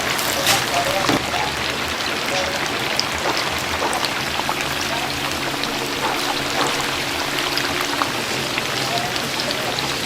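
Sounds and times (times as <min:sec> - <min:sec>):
chicken deep-frying in oil: 0:00.0 - 0:10.0
faint steady hum: 0:02.9 - 0:09.8.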